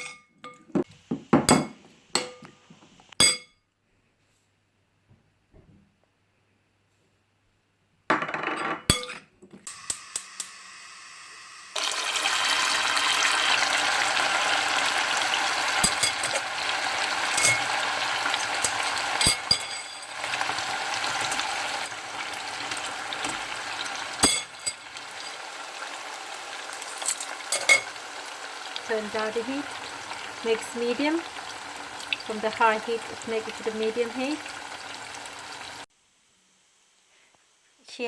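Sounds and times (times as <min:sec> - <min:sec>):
metal utensil clinking on pan: 0:01.5 - 0:02.5, 0:03.2 - 0:03.5, 0:08.8 - 0:09.2, 0:15.6 - 0:21.6, 0:23.1 - 0:25.5, 0:26.8 - 0:28.0
meat sizzling in hot oil: 0:09.7 - 0:35.9.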